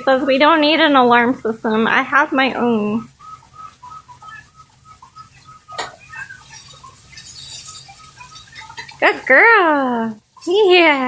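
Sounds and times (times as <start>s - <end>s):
bird beeping alarm calls: 0.2s - 11.0s.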